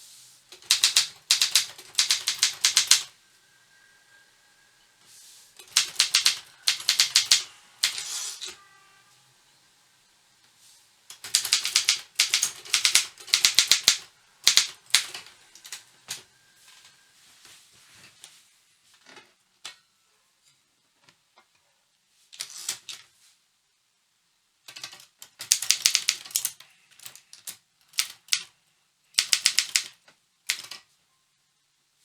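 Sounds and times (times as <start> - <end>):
typewriter carriage rasping sweep: 0.2 - 9.1, 11.1 - 17.0, 22.4 - 23.1, 25.4 - 26.4, 29.2 - 29.9
typewriter key strikes: 0.6 - 3.1, 5.6 - 8.1, 11.1 - 15.2, 24.7 - 26.5, 29.2 - 29.9.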